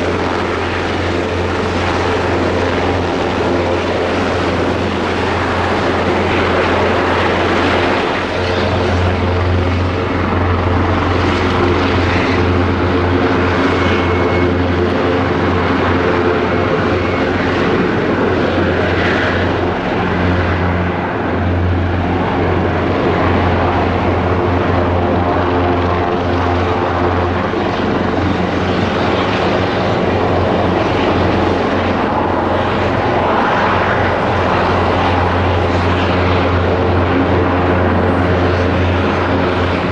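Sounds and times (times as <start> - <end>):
helicopter rotor and turbine drone: 0.0 - 39.9.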